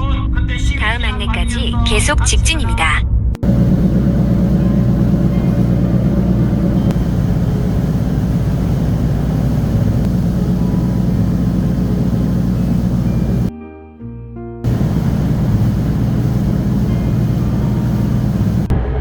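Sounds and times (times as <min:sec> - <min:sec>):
vehicle engine rumbling: 0:03.4 - 0:13.5, 0:14.7 - 0:18.8.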